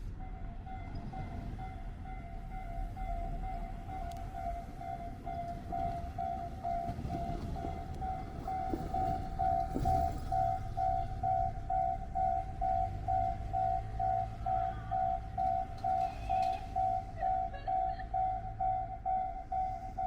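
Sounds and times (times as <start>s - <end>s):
train rumbling: 0.0s - 20.0s
level crossing warning bell ringing: 0.1s - 20.0s.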